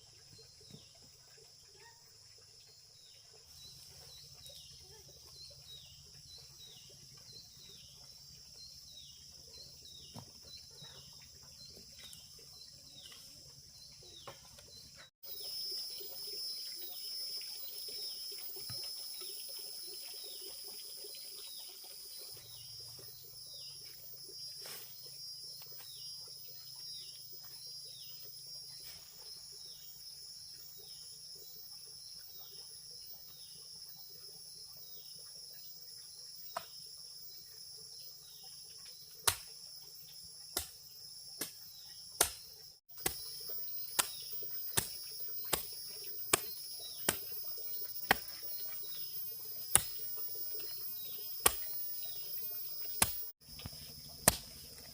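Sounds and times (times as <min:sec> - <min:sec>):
insects droning: 0:11.3 - 0:54.9.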